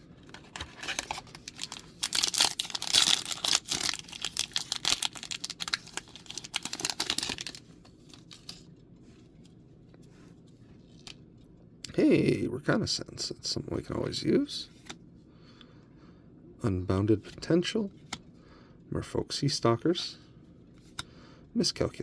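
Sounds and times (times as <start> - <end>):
foil wrapper tearing and crinkling: 0.7 - 8.6.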